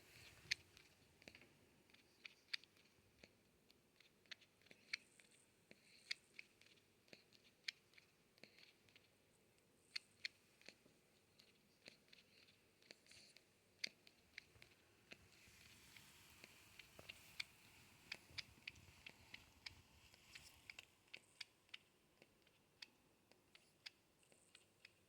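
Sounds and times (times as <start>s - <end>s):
porcupine mouth clicks: 0.1s - 25.0s.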